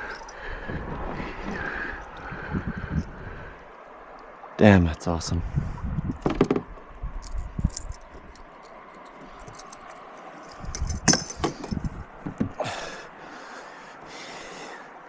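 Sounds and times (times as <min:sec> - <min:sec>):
flowing river water: 0:00.0 - 0:15.0
gear rattling and knocking in kayak: 0:06.1 - 0:12.6.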